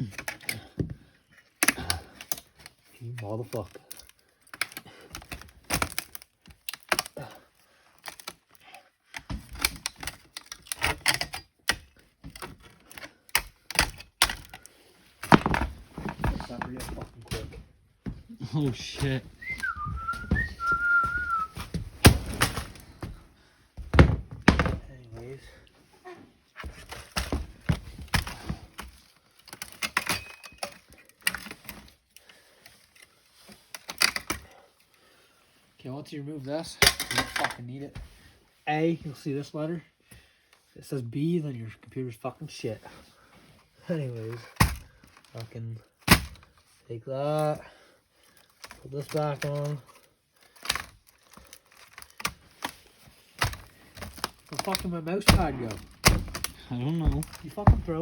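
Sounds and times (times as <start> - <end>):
laptop parts clicking and rattling: 3.4 - 17.2, 26.8 - 34.5, 48.2 - 58.0
clicks and knocks on laptop casing: 15.2 - 17.0.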